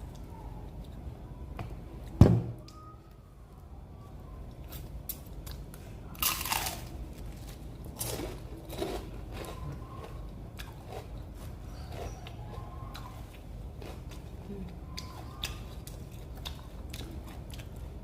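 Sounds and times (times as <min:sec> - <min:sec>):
crunching and chewing fritters: 0:04.3 - 0:18.0.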